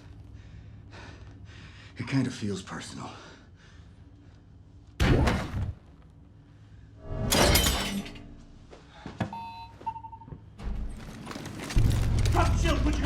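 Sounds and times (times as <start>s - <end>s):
glass shattering: 7.2s - 8.4s.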